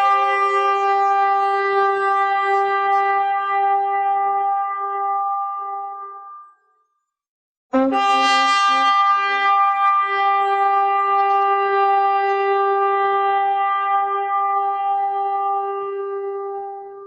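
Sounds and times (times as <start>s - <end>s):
loud horn blast: 7.8s - 17.0s.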